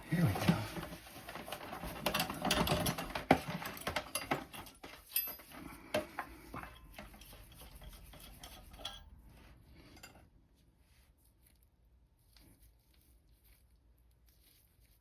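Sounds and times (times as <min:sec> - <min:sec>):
metal parts clinking and knocking: 0:01.4 - 0:09.1.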